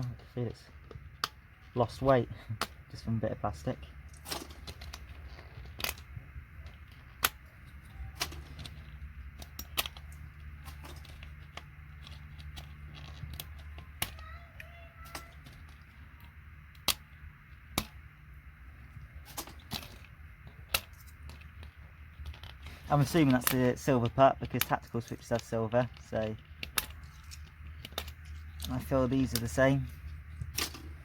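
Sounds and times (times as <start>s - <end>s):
steady low hum: 0.0s - 31.0s
plastic keys clicking and snapping: 4.1s - 17.1s, 19.2s - 29.6s.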